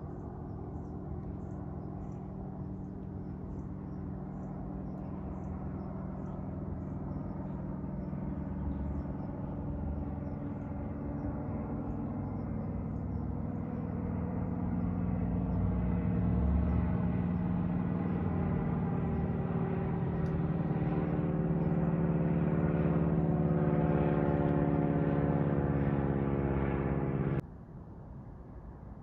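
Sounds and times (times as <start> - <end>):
aircraft engine drone: 0.0 - 29.0.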